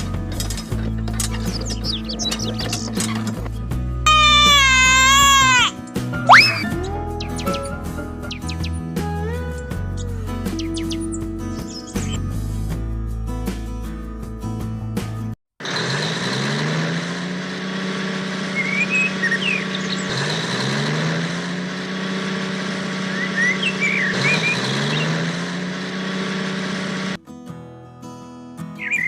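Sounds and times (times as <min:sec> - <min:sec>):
birds chirping: 0:00.7 - 0:12.3, 0:18.3 - 0:21.0, 0:21.8 - 0:27.2, 0:28.8 - 0:29.0
engine speeding up: 0:06.3 - 0:07.0, 0:15.6 - 0:27.2.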